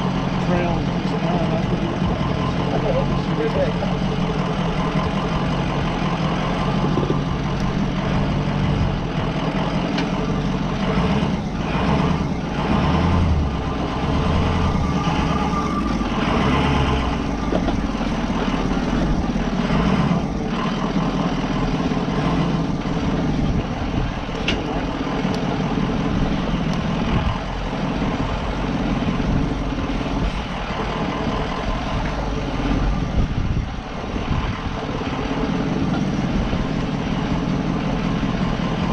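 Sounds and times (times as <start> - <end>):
van engine running: 0.0 - 38.9
knocks and rattles: 4.4 - 10.6.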